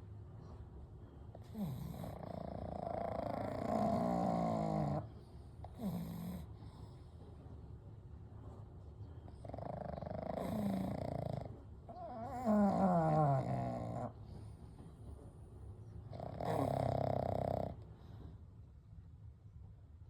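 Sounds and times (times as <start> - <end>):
dogs snoring: 1.4 - 7.2, 9.3 - 14.6, 16.1 - 18.2.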